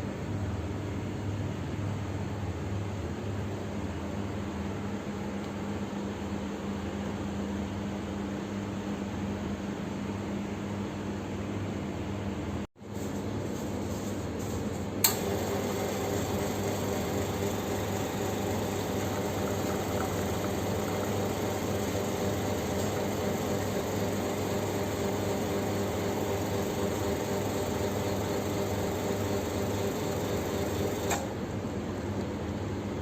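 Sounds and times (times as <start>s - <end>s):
coffee machine humming: 14.7s - 33.0s.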